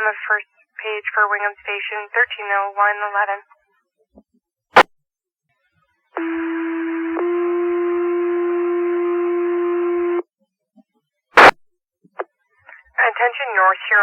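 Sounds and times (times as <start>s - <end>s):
radio squelch crackle: 12.7s - 14.0s.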